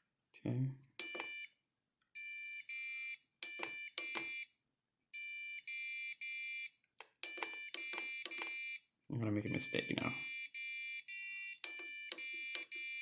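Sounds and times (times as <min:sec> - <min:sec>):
buzzer beeping tones: 0:01.0 - 0:01.6, 0:02.2 - 0:04.5, 0:05.2 - 0:08.8, 0:09.5 - 0:13.0.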